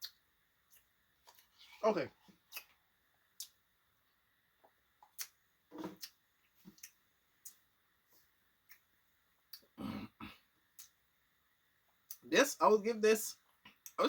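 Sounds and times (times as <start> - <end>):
lip smacks: 5.0 - 7.6.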